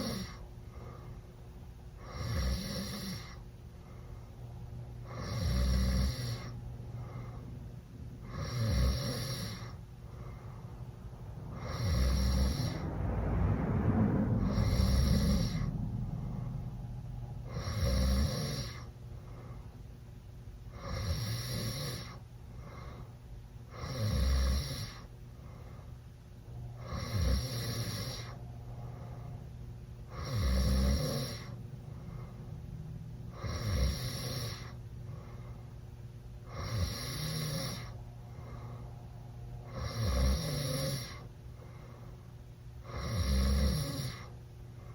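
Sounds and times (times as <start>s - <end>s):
person snoring loudly: 0.0s - 0.4s, 2.0s - 3.4s, 5.1s - 6.6s, 8.2s - 9.8s, 11.5s - 12.8s, 14.4s - 15.7s, 17.4s - 18.9s, 20.7s - 22.2s, 23.7s - 25.0s, 26.8s - 28.4s, 30.1s - 31.6s, 33.3s - 34.8s, 36.5s - 38.0s, 39.7s - 41.3s, 42.8s - 44.3s.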